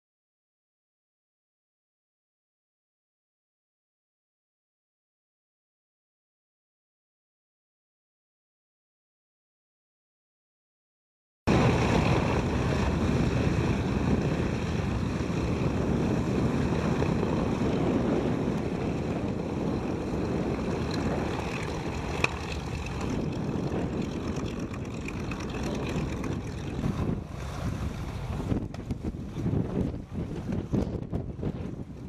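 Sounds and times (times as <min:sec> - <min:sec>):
steady engine drone: 0:11.5 - 0:31.1
wind buffeting microphone: 0:11.5 - 0:32.0.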